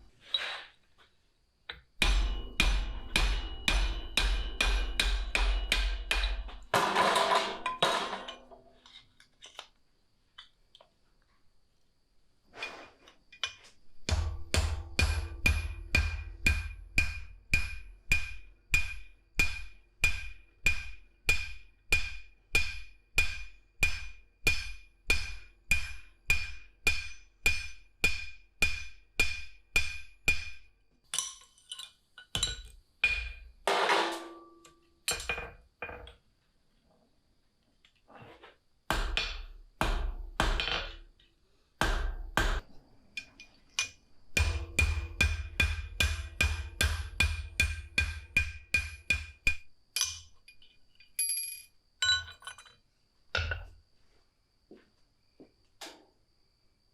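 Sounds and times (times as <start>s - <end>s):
hammer striking steel on anvil: 2.0s - 8.4s, 14.1s - 35.5s, 38.9s - 41.0s, 41.8s - 42.6s, 43.2s - 50.3s.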